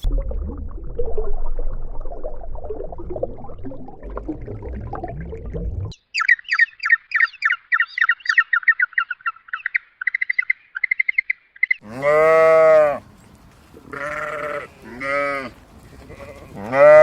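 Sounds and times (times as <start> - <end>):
bird chirping rapidly: 6.0 - 11.8.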